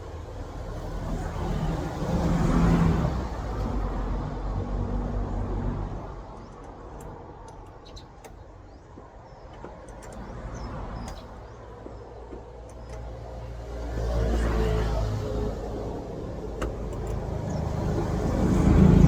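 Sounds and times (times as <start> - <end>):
vehicle engine rumbling: 0.0 - 19.0.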